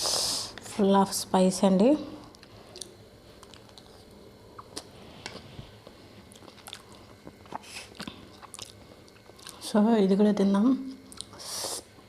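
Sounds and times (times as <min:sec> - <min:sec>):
close-up chewing: 0:02.4 - 0:09.6
mouth clicks and smacks: 0:04.5 - 0:04.9.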